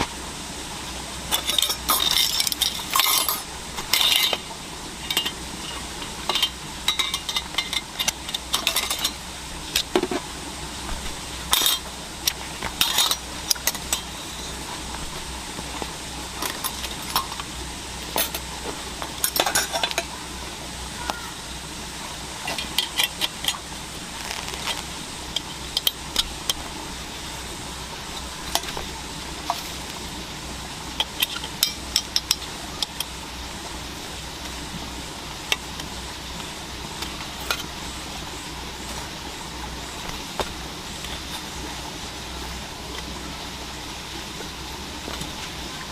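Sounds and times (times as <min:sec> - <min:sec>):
low background noise: 0:00.0 - 0:45.9
cookware and utensils clinking: 0:01.3 - 0:10.2, 0:11.5 - 0:11.9, 0:12.8 - 0:14.5, 0:19.2 - 0:20.2.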